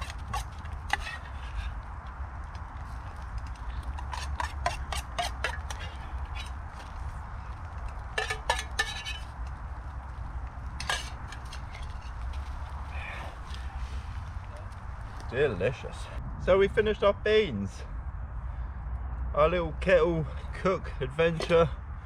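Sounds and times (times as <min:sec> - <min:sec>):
spoon clinking and scraping metal pot: 0:00.0 - 0:01.8, 0:03.8 - 0:06.6, 0:08.1 - 0:09.4, 0:10.8 - 0:12.2
steady low rumble: 0:00.0 - 0:22.0.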